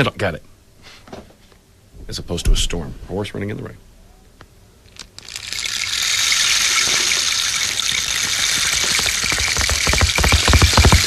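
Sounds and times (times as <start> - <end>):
rain stick hiss: 5.0 - 11.0
knocks imitating hoofbeats: 8.0 - 11.0.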